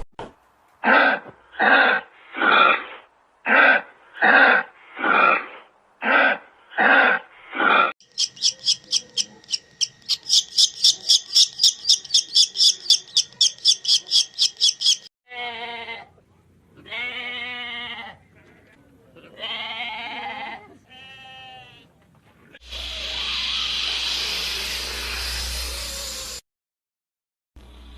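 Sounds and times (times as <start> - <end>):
rapid high-pitched chirps: 8.0 - 15.1
goat or sheep bleating: 15.3 - 16.1, 16.8 - 18.2, 19.4 - 21.9.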